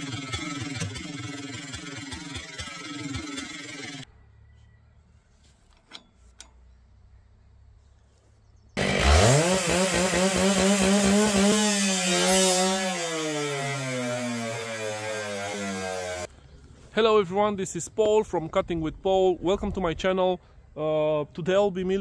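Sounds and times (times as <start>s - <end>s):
chainsaw revving: 0.0s - 4.0s, 8.8s - 16.3s.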